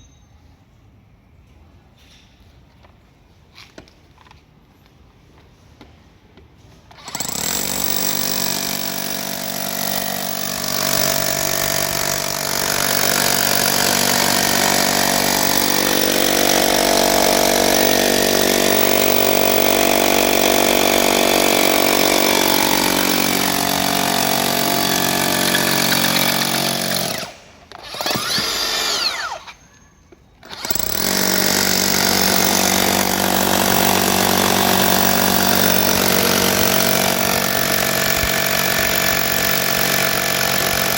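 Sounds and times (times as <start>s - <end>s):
rotary hammer hammering: 7.0s - 29.2s, 30.5s - 40.9s.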